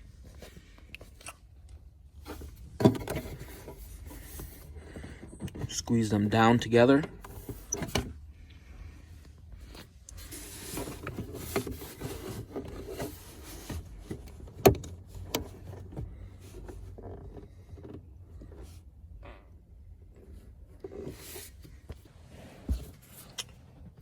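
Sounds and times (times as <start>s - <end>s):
plastic rubbing and scraping: 2.2s - 6.0s, 9.6s - 18.8s.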